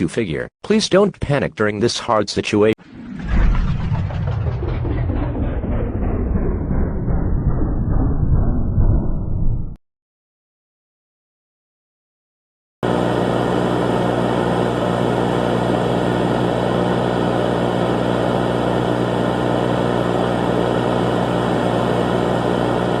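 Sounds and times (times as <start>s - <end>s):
loud steady drone: 3.1s - 9.5s, 12.8s - 23.0s.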